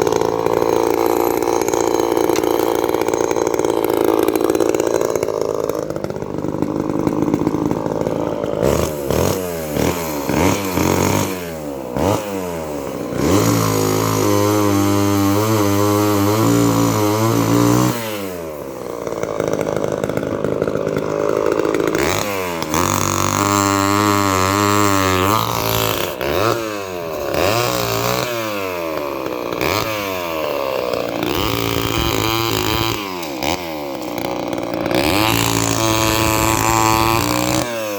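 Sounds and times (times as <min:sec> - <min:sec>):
chainsaw revving: 0:00.0 - 0:37.9.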